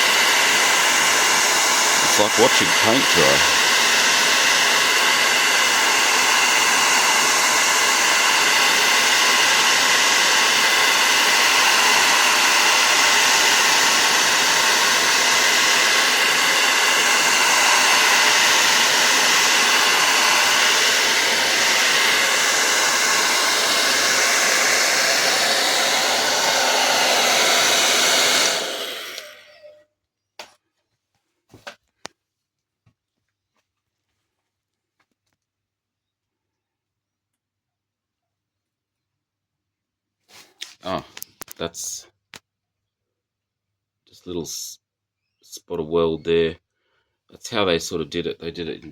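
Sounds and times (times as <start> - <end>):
hair dryer blowing: 0.0 - 29.8.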